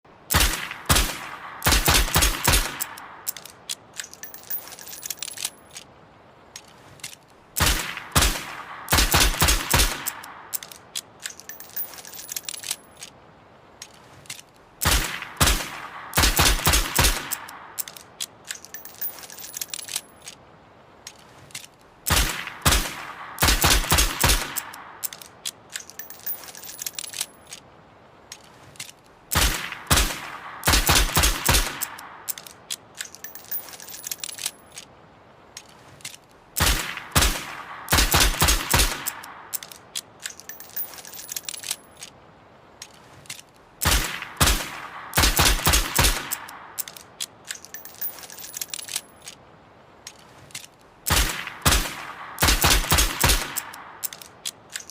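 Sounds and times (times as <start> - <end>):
metallic clicks: 0.3 - 5.9, 6.5 - 13.2, 13.8 - 27.7, 28.3 - 34.9, 35.5 - 42.2, 42.8 - 49.4, 50.0 - 54.9.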